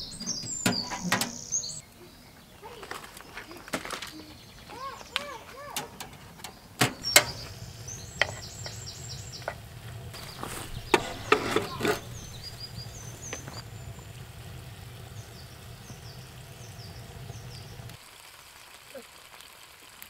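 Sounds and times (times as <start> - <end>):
sharp knocks and clatters: 0.0 - 1.5, 5.7 - 7.5
small birds chirping: 0.0 - 19.0.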